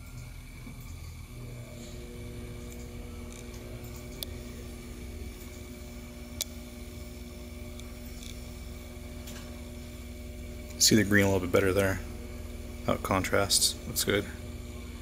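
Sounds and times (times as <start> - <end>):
steady room hum: 0.0 - 15.0.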